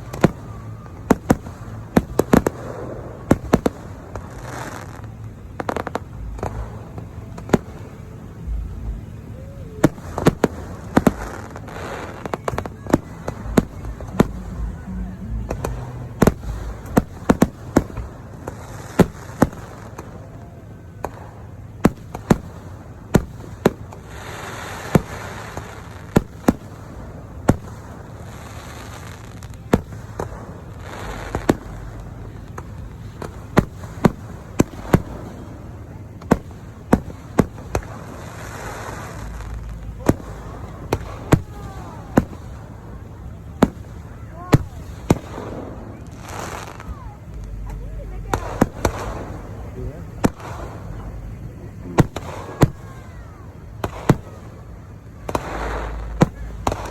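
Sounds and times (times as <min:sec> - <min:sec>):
fireworks bangs: 0:00.0 - 0:56.9
fireworks hissing crackle: 0:00.0 - 0:56.9.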